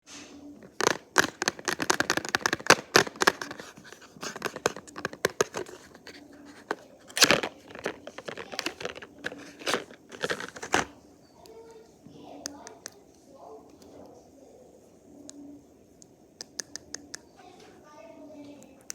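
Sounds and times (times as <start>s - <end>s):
packaging tearing and crinkling: 0.6s - 10.9s.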